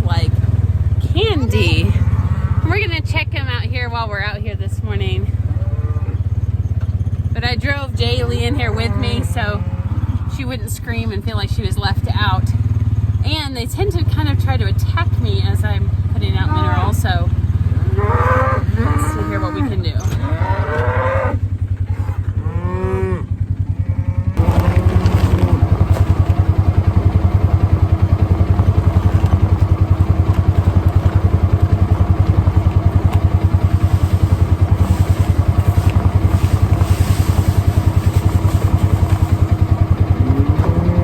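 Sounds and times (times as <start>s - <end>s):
vehicle engine throbbing: 0.0s - 41.0s
cattle mooing: 1.4s - 3.0s, 5.3s - 6.3s, 8.0s - 11.1s, 16.2s - 26.3s, 33.0s - 41.0s.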